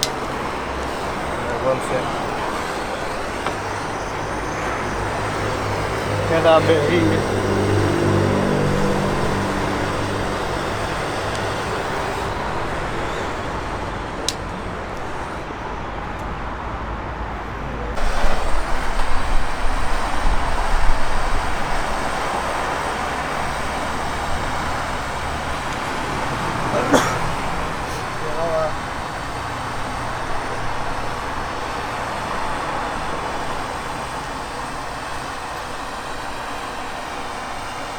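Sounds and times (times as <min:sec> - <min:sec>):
sharp click: 0:00.0 - 0:00.5
blowtorch rushing: 0:00.0 - 0:15.9, 0:17.9 - 0:37.9.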